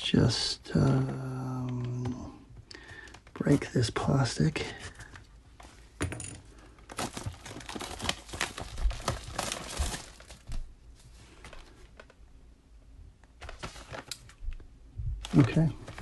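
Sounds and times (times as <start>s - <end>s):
plastic wrap tearing and crinkling: 6.9s - 10.7s, 13.4s - 14.6s, 15.2s - 16.0s.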